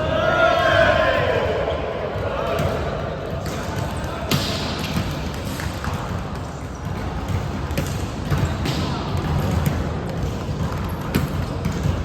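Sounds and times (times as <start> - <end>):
volleyball slaps: 2.5 - 12.0.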